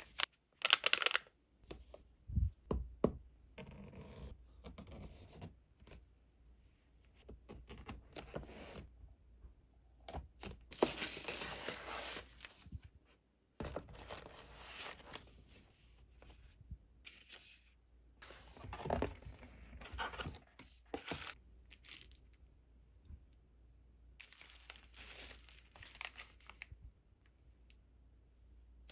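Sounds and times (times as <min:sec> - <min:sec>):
plastic packaging crinkling: 0:00.0 - 0:01.3.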